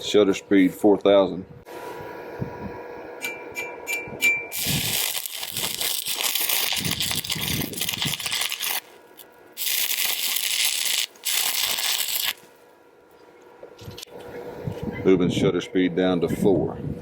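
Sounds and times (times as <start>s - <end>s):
welding arc crackling: 4.5s - 12.6s.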